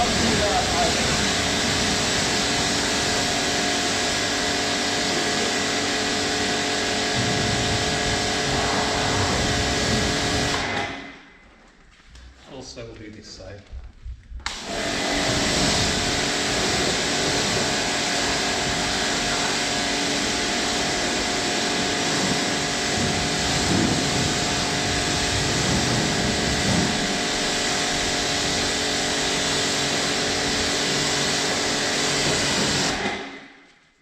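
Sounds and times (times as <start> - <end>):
water jet hissing: 0.0 - 11.2, 14.6 - 33.2
pressure washer motor humming: 0.0 - 11.3, 14.5 - 33.6.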